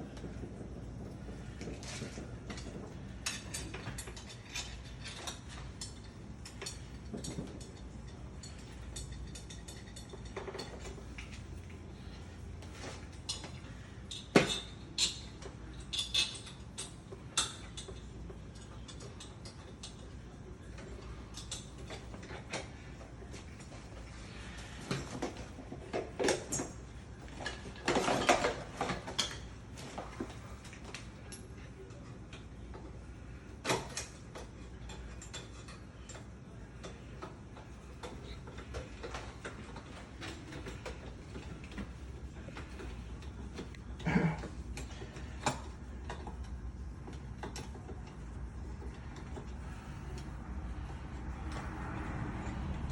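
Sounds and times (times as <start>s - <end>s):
metal parts clicking and clinking: 1.6s - 22.9s, 33.6s - 52.9s.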